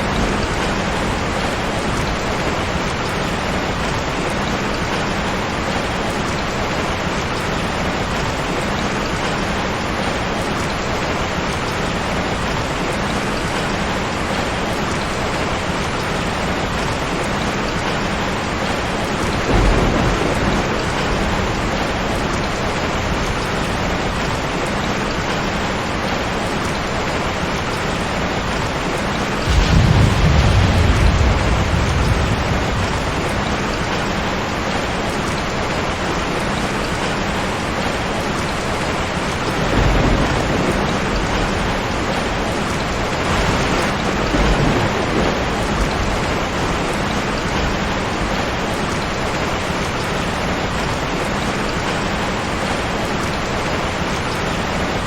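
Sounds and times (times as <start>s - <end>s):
steady rain falling: 0.0s - 55.0s
thunder rumbling: 15.8s - 25.4s, 27.8s - 36.2s, 39.2s - 50.0s.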